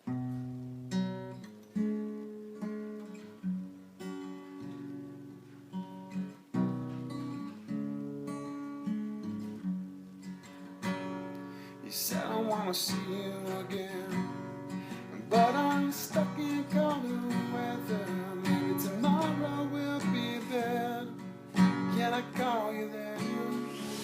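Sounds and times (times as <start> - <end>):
acoustic guitar chords: 0.0 - 24.0.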